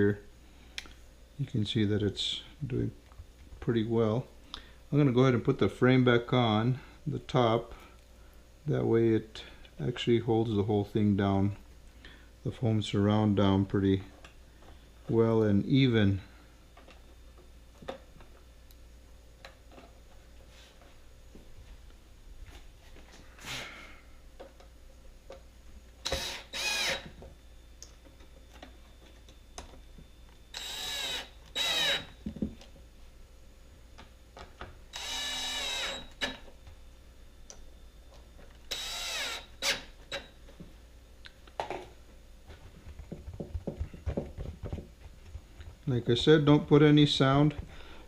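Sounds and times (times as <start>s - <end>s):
cordless drill driving screws: 26.0s - 27.1s, 30.6s - 32.1s, 34.9s - 36.4s, 38.7s - 39.8s.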